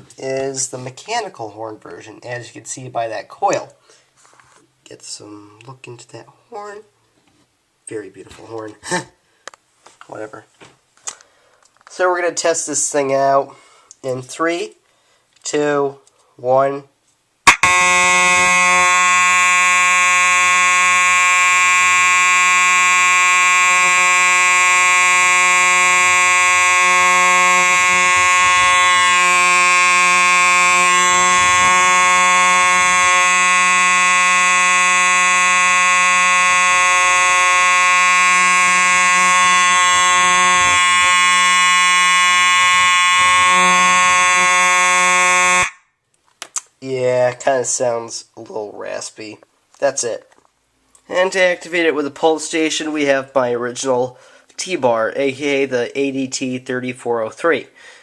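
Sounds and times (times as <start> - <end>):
raspy fire alarm horn: 17.5 - 45.8.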